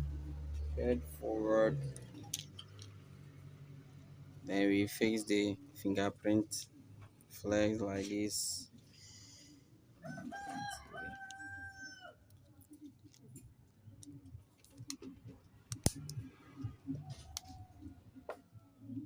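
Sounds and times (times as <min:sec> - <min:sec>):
rooster crowing: 0:10.0 - 0:12.2
phone parts clicking: 0:15.7 - 0:16.2.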